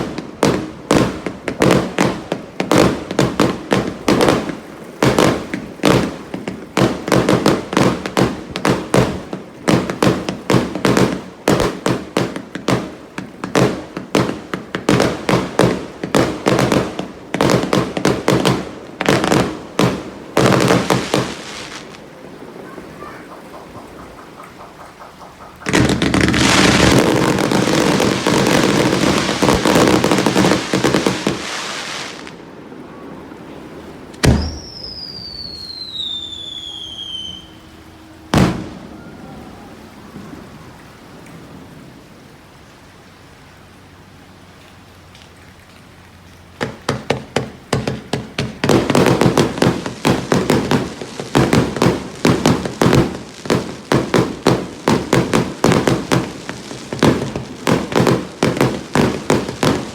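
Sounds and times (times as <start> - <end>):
fireworks bang: 0.0 - 22.0, 24.7 - 32.4, 34.1 - 37.6, 38.3 - 39.1, 46.6 - 59.9
fireworks crackling: 0.0 - 41.9, 45.3 - 59.9
falling whistle: 34.2 - 40.8.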